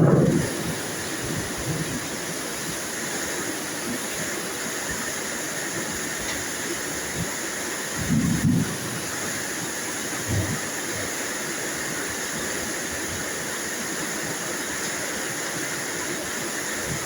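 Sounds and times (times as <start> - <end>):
low thunder clap: 0.0 - 2.1
steady rain falling: 0.0 - 17.0.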